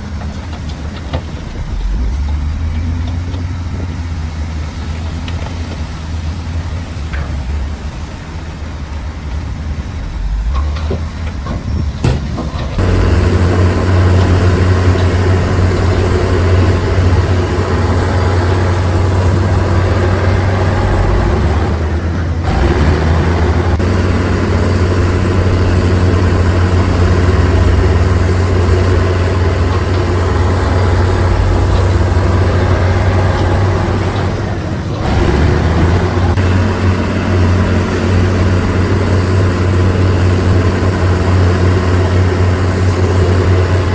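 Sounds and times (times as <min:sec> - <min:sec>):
heavy machine engine humming: 0:00.0 - 0:43.9.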